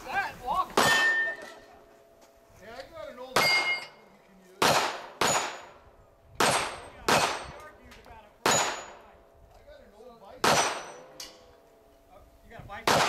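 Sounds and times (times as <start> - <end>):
steel target ringing: 0.8 - 1.4, 3.3 - 4.0
gunshots: 4.6 - 5.8, 6.4 - 7.6, 8.4 - 9.0, 10.4 - 11.1.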